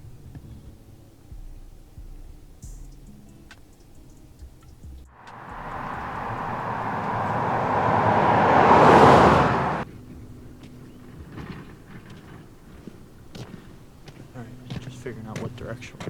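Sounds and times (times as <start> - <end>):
vehicle tyre and road noise: 5.1 - 14.3.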